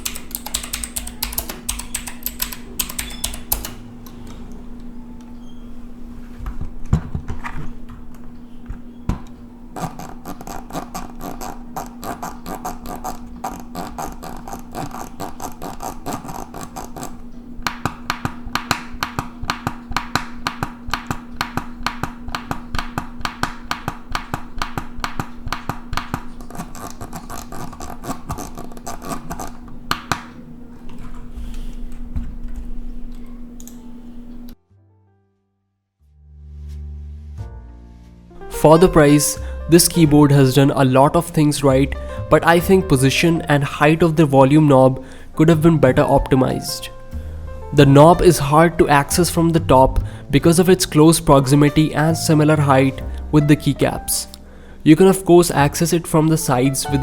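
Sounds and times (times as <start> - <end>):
mechanical keyboard typing: 0.0 - 4.3, 9.8 - 30.2.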